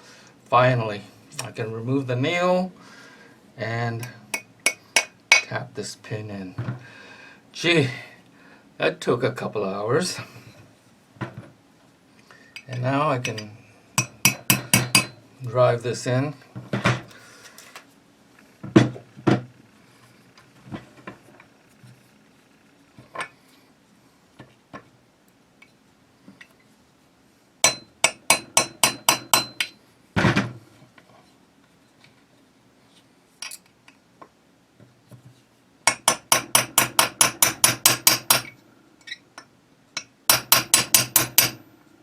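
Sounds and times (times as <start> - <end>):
small hammer tapping metal pin: 4.0 - 5.5, 12.6 - 15.2, 27.6 - 29.8, 35.9 - 38.5, 39.4 - 41.6.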